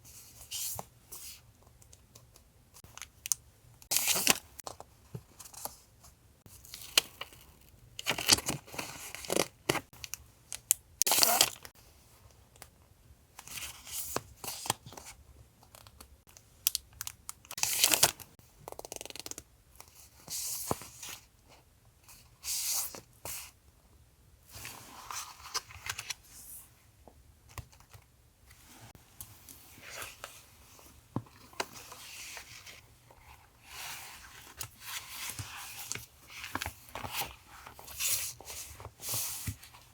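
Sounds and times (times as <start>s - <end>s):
paper rustling and crinkling: 29.6s - 39.9s.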